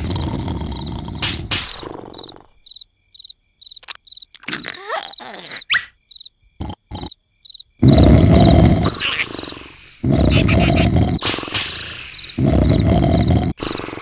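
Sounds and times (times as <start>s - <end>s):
loud snore: 0.0s - 2.5s, 7.8s - 14.0s
cartoon cricket chirps: 0.0s - 14.0s.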